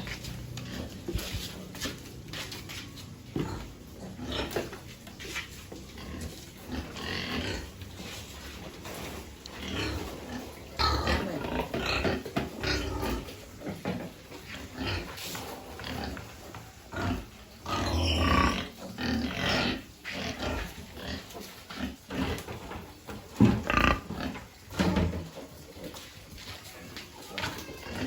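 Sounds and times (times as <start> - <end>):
piglets grunting and squealing: 5.5 - 13.6, 14.5 - 22.6, 26.9 - 28.0.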